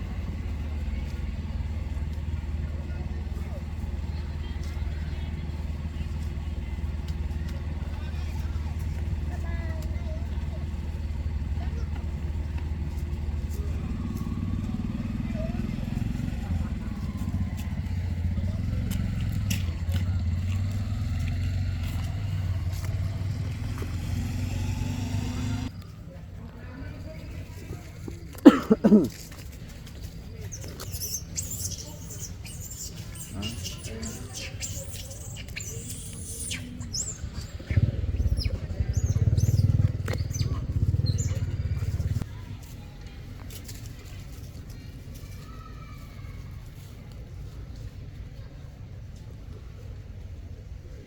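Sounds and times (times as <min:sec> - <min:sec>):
engine running steadily: 0:00.0 - 0:26.4, 0:32.9 - 0:44.7
monkeys squeaking: 0:30.5 - 0:42.2.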